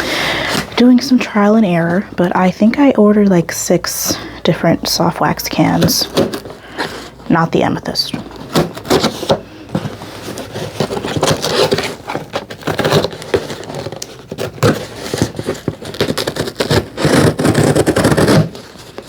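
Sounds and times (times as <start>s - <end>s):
packaging crackling and rustling: 5.6s - 19.0s.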